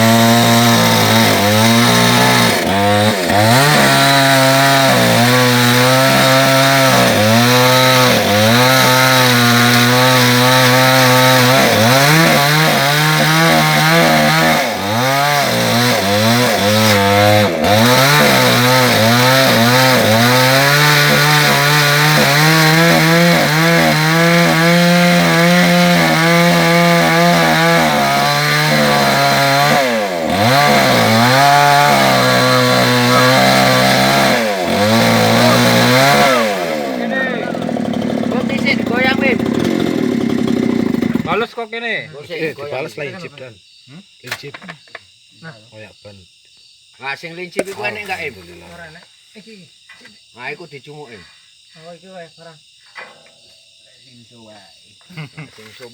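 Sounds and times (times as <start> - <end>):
chainsaw cutting through wood: 0.0 - 41.4.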